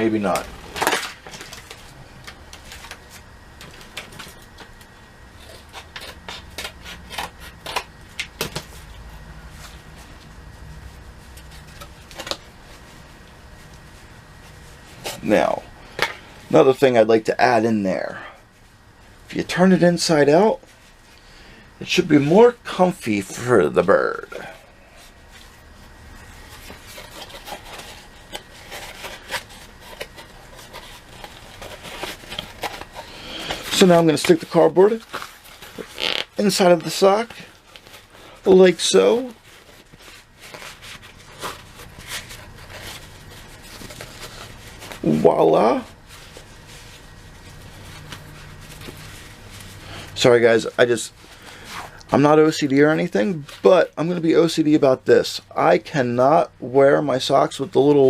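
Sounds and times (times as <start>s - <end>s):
low steady hum: 0.0s - 58.0s
fabric rubbing and rustling: 6.8s - 17.1s, 21.9s - 54.3s
hands handling craft materials: 24.3s - 52.2s.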